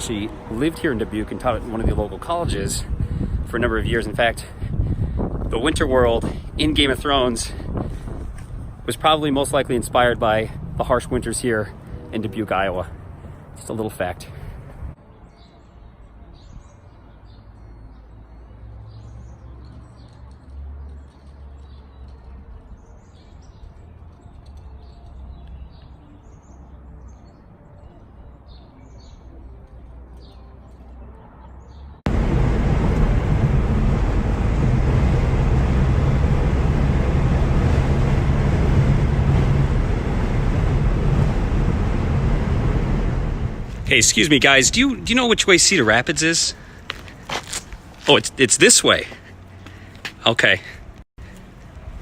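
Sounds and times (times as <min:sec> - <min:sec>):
birds chirping: 0:10.3 - 0:32.0, 0:41.8 - 0:51.5
low hum: 0:32.1 - 0:43.9
loud steady rushing noise: 0:32.1 - 0:45.4.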